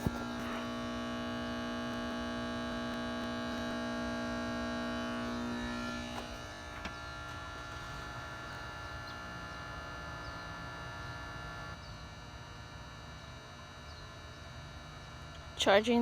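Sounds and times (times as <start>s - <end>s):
low electrical hum: 0.0s - 16.0s.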